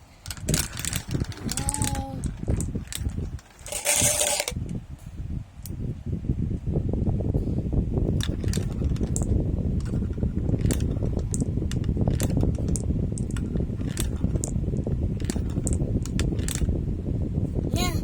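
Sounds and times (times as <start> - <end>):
marbles clicking and clacking: 0.2 - 4.6, 8.2 - 16.7
marbles rolling on track: 0.2 - 4.6, 8.2 - 16.7.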